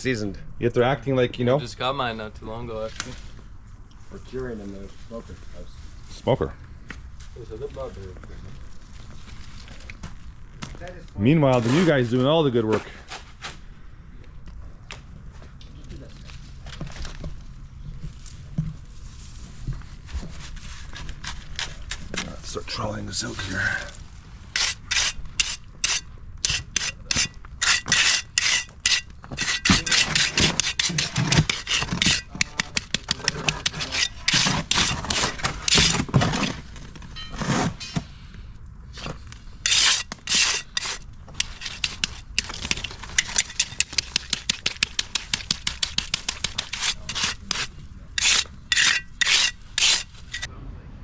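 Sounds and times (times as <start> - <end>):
trowel scraping wet concrete: 20.4 - 36.7, 39.0 - 50.5.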